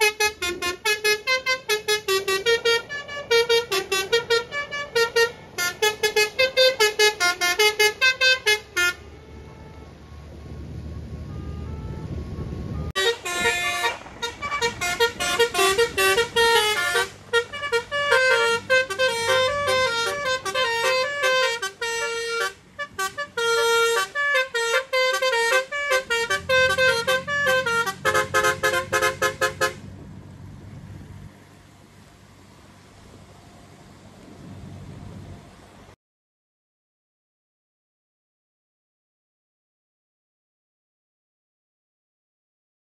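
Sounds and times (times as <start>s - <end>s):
vehicle musical horn melody: 0.0s - 10.4s, 11.2s - 29.9s
low engine rumble: 0.0s - 36.0s.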